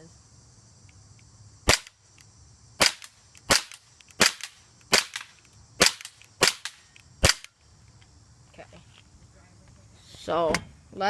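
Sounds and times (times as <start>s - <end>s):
airsoft pistol shots: 1.6s - 2.0s, 2.8s - 7.6s.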